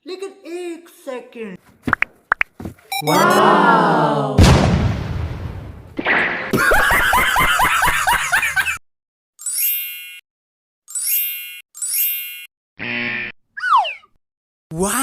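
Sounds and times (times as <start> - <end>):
loud comic hit: 4.4 - 6.6.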